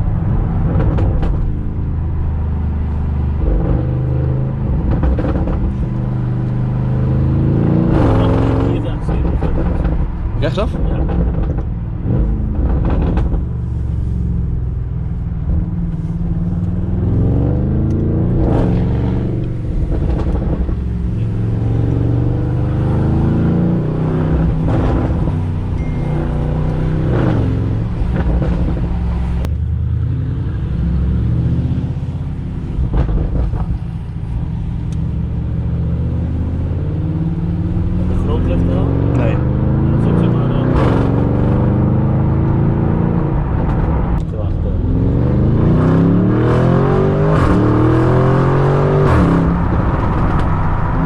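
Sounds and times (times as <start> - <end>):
exhaust crackles and pops: 0.0 - 1.9, 4.6 - 6.6, 7.9 - 17.0, 17.6 - 22.0, 27.2 - 29.7, 32.2 - 35.7, 43.2 - 44.8, 49.0 - 51.0
car engine accelerating hard: 0.0 - 14.5, 15.4 - 51.0.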